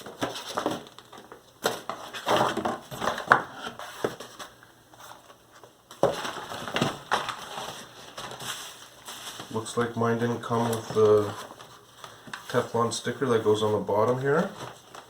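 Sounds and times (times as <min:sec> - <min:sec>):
packaging crinkling and rustling: 0:00.0 - 0:15.0.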